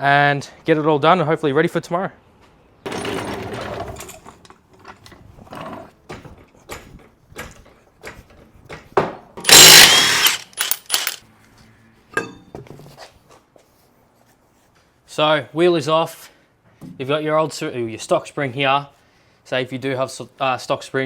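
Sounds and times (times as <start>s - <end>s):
tools clicking and knocking: 6.7s - 11.2s
power tool bursts: 9.4s - 11.2s.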